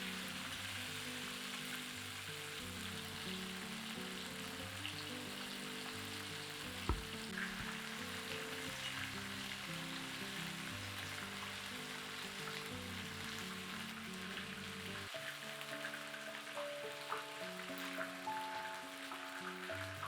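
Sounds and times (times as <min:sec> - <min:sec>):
food sizzling in oil: 0:00.0 - 0:20.0
low thud: 0:06.8 - 0:07.7.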